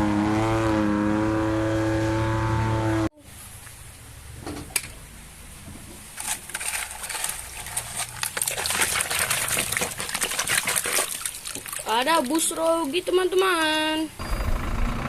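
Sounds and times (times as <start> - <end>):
plastic toys clattering: 6.2 - 13.7.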